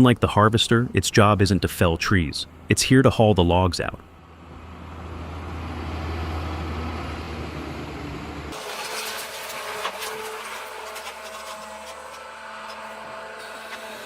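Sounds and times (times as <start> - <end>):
heavy engine low hum: 0.0 - 9.6.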